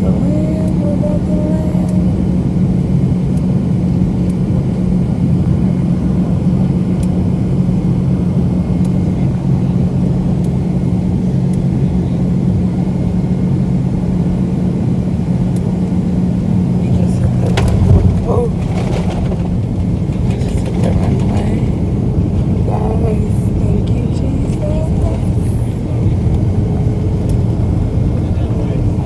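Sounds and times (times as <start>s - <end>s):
airliner engines droning: 0.0s - 29.0s.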